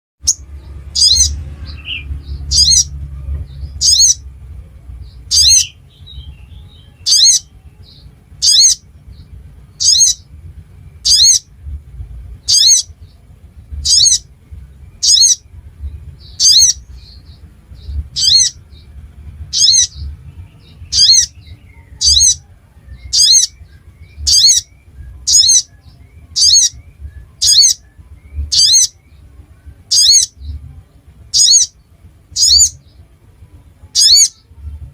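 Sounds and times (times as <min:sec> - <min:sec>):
faint low hum: 0:00.2 - 0:34.9
bird sharp high call: 0:34.0 - 0:34.4.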